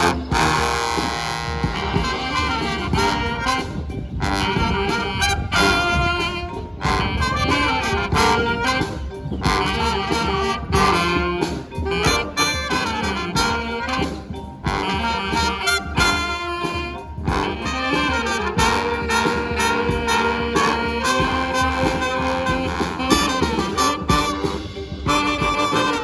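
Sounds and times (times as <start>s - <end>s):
brass band playing jazzy tune: 0.0s - 26.0s
drum hits: 0.0s - 26.0s.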